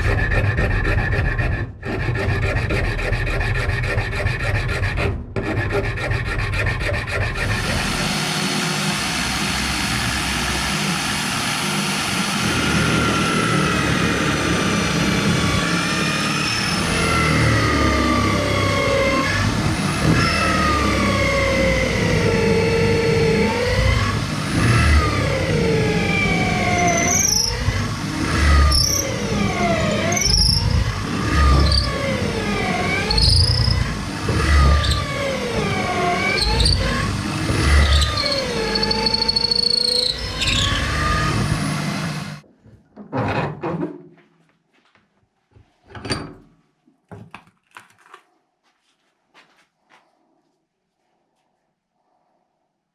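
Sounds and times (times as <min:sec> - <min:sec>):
power tool squealing on steel: 0:15.8 - 0:19.4, 0:24.6 - 0:42.0.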